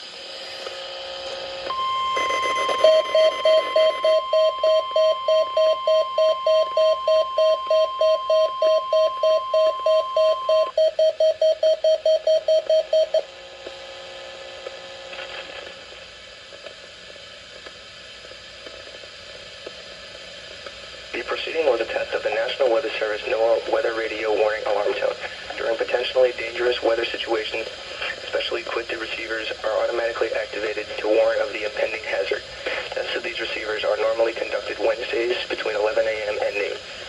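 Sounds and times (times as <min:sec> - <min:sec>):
radio alert beeping: 0:01.7 - 0:10.7
steady high alarm tone: 0:01.7 - 0:10.7
faint radio hiss: 0:14.3 - 0:37.0.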